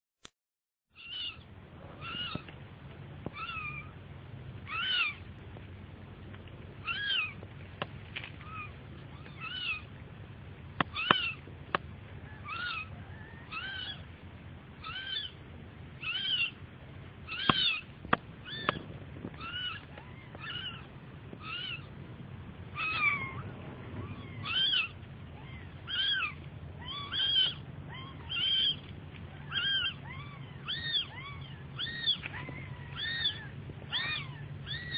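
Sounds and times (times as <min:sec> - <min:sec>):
kitten mewing: 0:17.3 - 0:21.9, 0:22.7 - 0:34.9.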